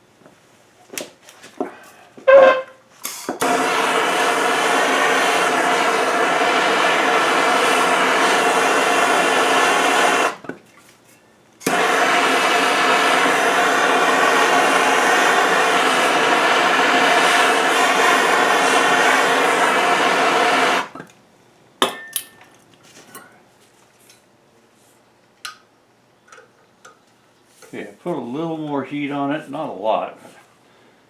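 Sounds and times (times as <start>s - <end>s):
heating tool roaring: 2.3s - 10.4s, 11.6s - 21.0s.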